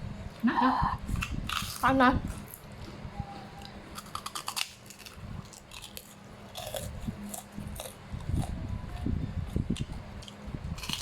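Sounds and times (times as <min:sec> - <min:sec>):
crunchy crackles: 0:03.6 - 0:11.0
person chewing food: 0:03.6 - 0:11.0.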